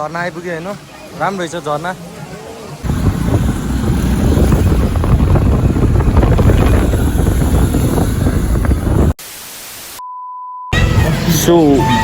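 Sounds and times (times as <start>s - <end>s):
wind buffeting microphone: 2.8s - 9.2s.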